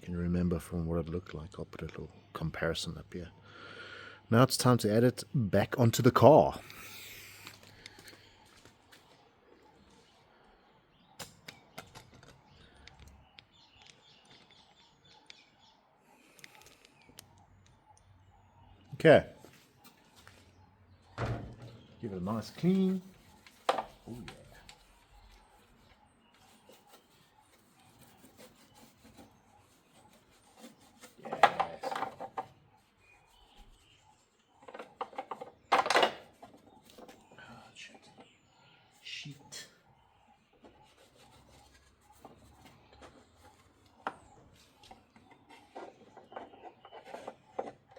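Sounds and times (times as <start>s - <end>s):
faint bird chirps: 6.2s - 47.9s.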